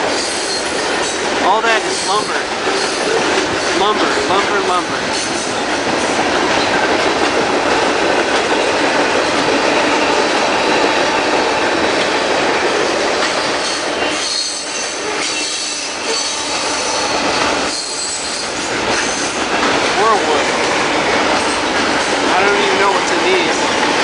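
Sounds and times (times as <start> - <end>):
freight train rumbling and rattling: 0.0 - 24.0
high wheel squeals: 13.2 - 19.4.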